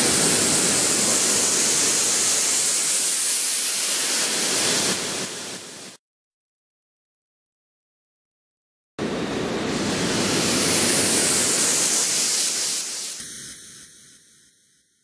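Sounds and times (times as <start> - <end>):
synthesized hiss sweeping down: 0.0 - 6.0, 9.0 - 14.9.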